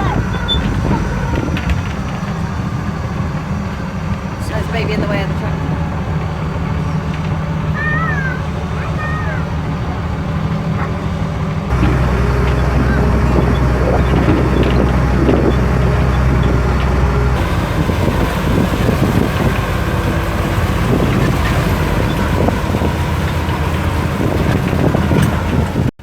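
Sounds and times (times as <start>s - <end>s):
tractor engine running: 0.0s - 26.0s
wind buffeting microphone: 11.6s - 26.0s.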